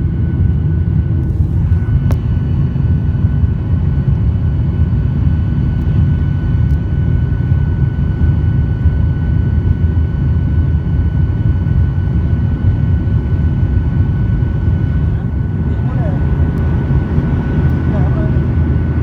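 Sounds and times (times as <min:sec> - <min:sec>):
jet engine low rumble: 0:00.0 - 0:19.0
thin steady whine: 0:11.2 - 0:19.0.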